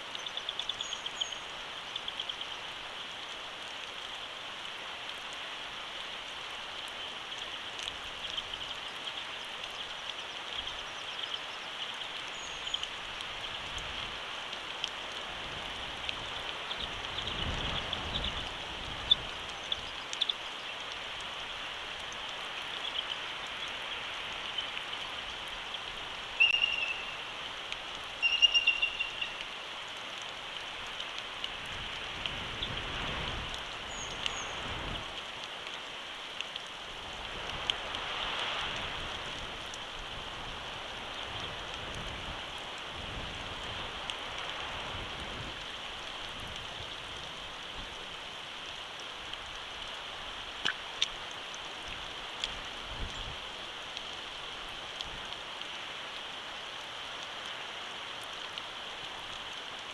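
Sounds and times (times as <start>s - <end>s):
rain pattering on microphone: 0.0s - 59.9s
wind gusts: 12.9s - 20.1s, 30.6s - 35.4s
bird chirping: 26.4s - 27.2s, 28.2s - 29.4s.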